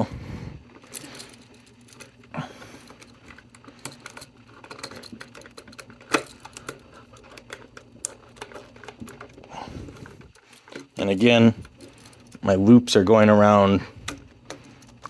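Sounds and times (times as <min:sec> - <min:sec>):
pliers and wire clicking: 0:00.8 - 0:11.0.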